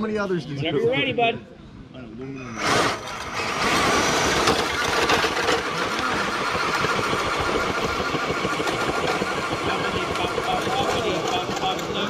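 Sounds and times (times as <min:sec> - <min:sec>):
electric motor whining: 0:02.5 - 0:12.0
gritty rumble: 0:02.6 - 0:12.0.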